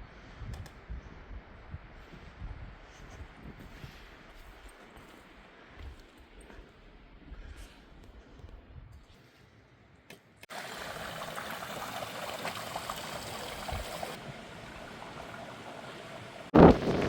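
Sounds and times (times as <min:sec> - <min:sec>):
running water trickling: 0:10.5 - 0:16.6.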